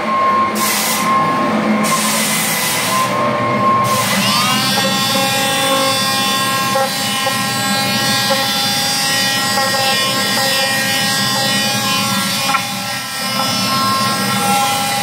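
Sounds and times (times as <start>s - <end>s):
floor sander motor whine: 0.0s - 15.0s
rough grinding noise: 3.8s - 15.0s.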